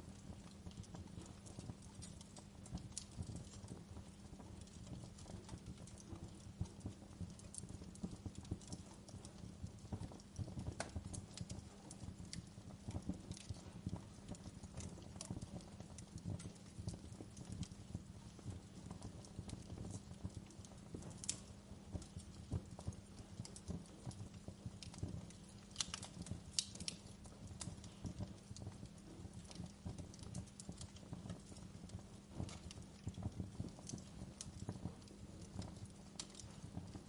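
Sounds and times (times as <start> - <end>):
wood fire crackling and popping: 0.0 - 37.0.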